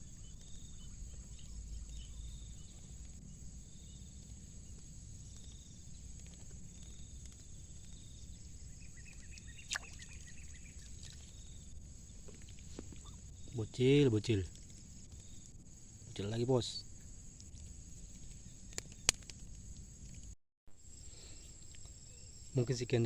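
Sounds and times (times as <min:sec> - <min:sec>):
quick ticks: 0:18.5 - 0:20.3
sharp click: 0:18.7 - 0:19.4.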